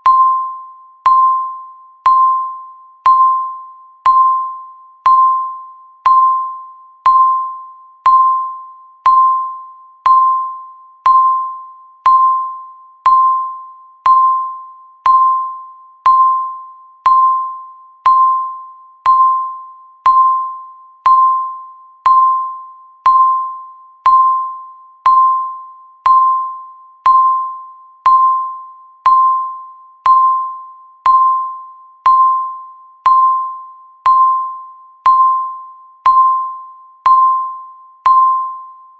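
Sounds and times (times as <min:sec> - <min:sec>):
timer beeping: 0:00.0 - 0:38.9.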